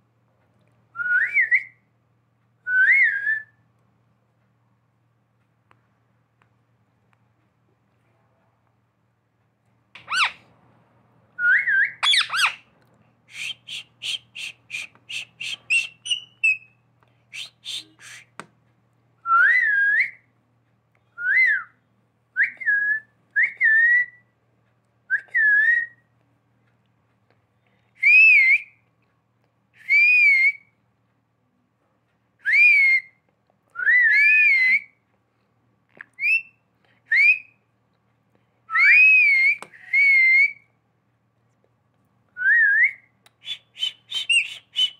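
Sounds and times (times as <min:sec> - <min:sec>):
parakeet whistling: 0:10.0 - 0:10.4, 0:11.5 - 0:12.6, 0:13.3 - 0:16.7, 0:43.4 - 0:44.9.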